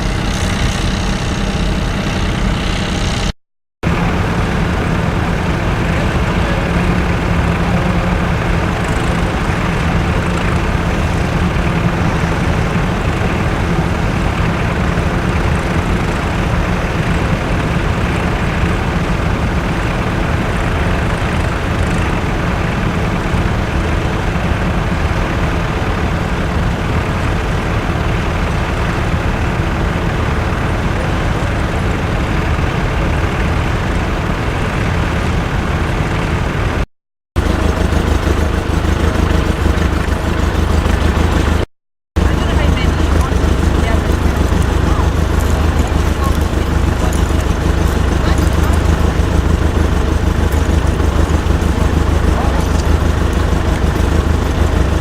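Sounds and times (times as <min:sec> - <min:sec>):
tractor engine running: 0:00.0 - 0:55.0.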